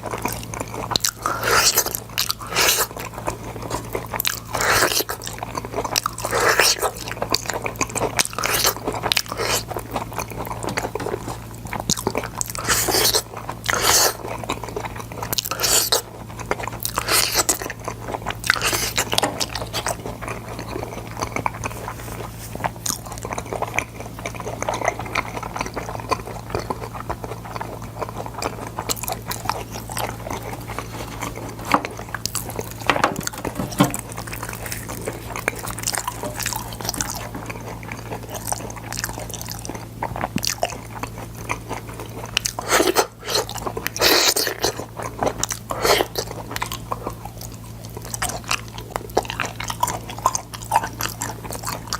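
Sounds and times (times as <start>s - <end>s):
crunchy chewing of beans: 0.0s - 51.9s
steady low hum: 7.1s - 44.0s.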